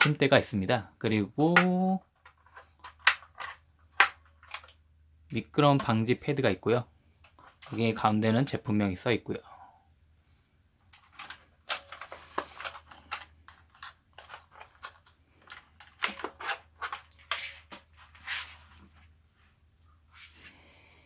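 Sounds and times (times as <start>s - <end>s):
keyboard clicks and plastic knocking: 11.0s - 17.8s.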